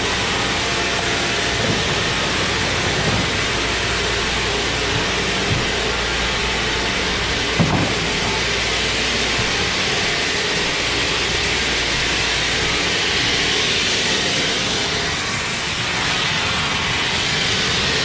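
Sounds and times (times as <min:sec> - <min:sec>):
sawmill machinery running: 0:00.0 - 0:18.0.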